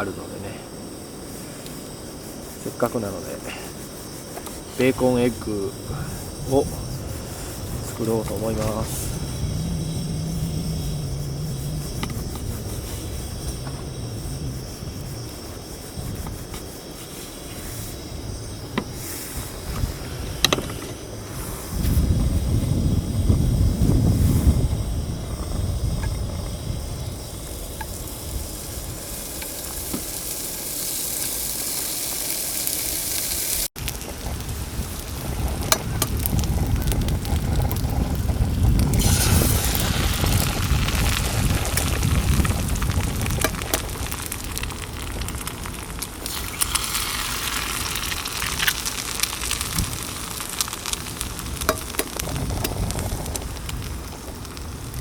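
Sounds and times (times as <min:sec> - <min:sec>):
low rumble: 0:05.7 - 0:15.2, 0:19.4 - 0:29.0
bacon sizzling in a pan: 0:24.8 - 0:55.0.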